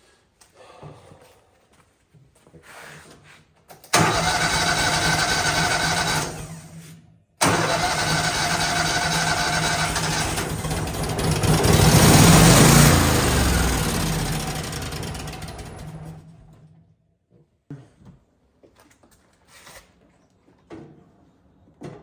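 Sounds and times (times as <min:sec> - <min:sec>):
electric starter cranking engine: 0:03.9 - 0:06.8, 0:07.4 - 0:16.7.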